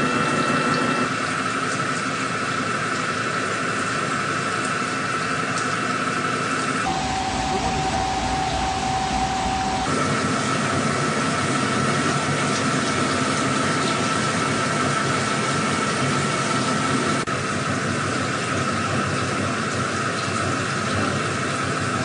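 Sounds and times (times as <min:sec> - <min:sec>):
machine high whine: 0:00.0 - 0:17.6.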